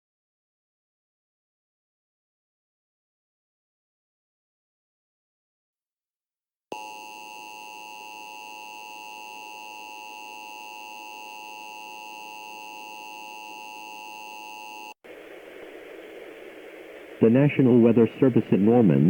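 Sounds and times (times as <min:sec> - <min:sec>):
shrill electronic alert tone: 0:06.8 - 0:15.0.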